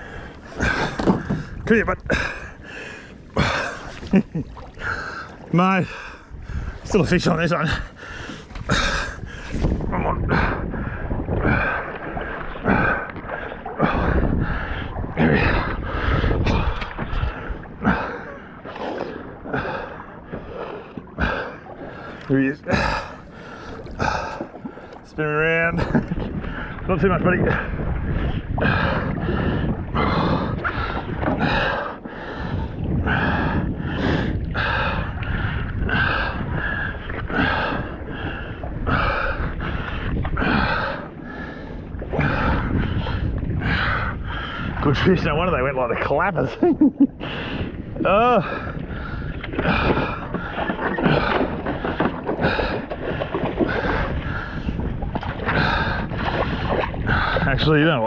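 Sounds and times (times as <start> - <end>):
man panting: 0.0 - 4.0, 7.7 - 9.5, 21.2 - 24.5
water sloshing and splashing: 0.0 - 58.0
wind buffeting microphone: 0.0 - 58.0.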